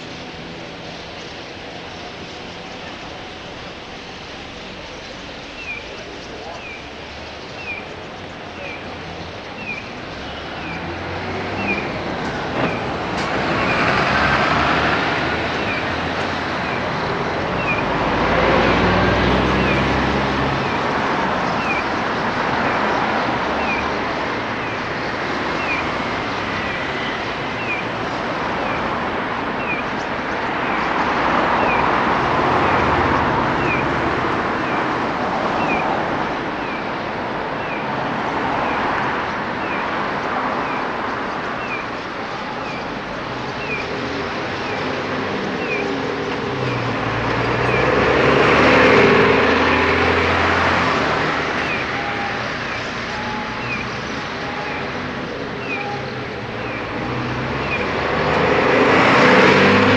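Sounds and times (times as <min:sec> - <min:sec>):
road traffic: 0:00.0 - 0:59.9
starlings calling: 0:00.0 - 0:59.9
vehicle passing: 0:10.2 - 0:27.5, 0:42.8 - 0:59.9.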